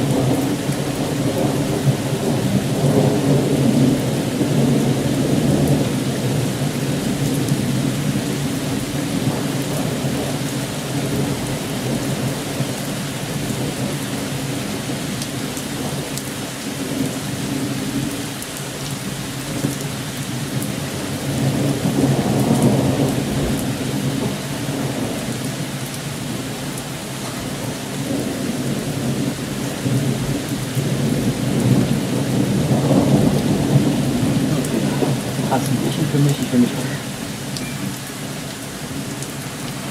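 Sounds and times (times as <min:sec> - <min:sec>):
rain falling: 0:00.0 - 0:39.9
thunder rumbling: 0:27.2 - 0:38.1.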